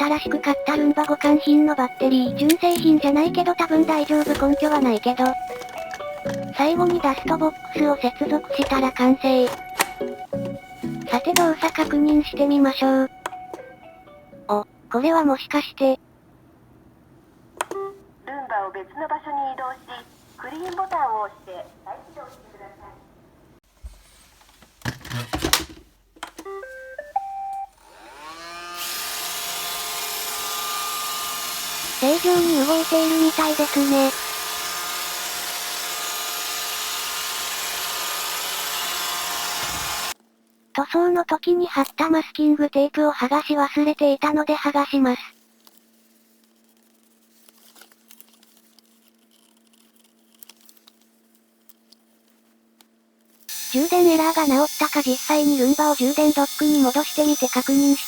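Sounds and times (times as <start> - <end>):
robot vacuum motors whining: 0.2 - 13.7, 27.8 - 40.2, 53.5 - 58.0
masking tape peeling off plastic: 0.7 - 12.3, 45.4 - 58.0
start-up beep tune: 26.5 - 27.7.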